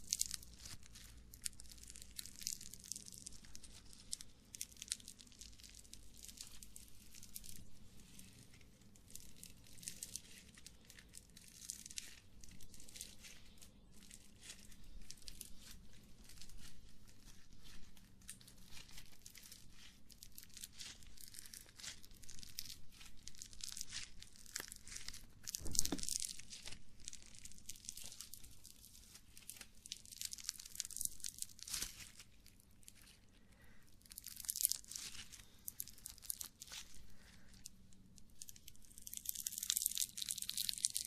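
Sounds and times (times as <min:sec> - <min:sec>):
crackling and crinkling: 0:00.0 - 0:41.0.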